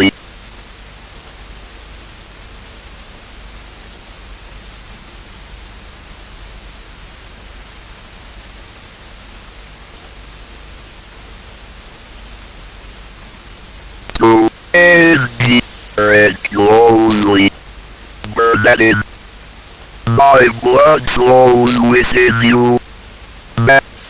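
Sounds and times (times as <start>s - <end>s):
static hiss: 0.0s - 0.3s, 14.1s - 24.0s.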